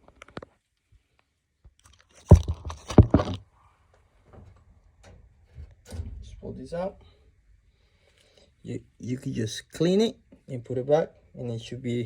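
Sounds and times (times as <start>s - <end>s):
handling knocks and rubbing: 2.2s - 3.4s.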